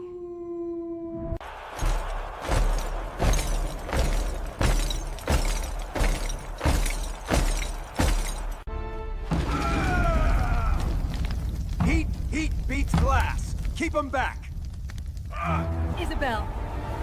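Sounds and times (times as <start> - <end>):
heavy crashing hits: 1.4 - 8.7
glassy shattering texture: 1.7 - 8.7
dramatic action score music: 15.3 - 17.0.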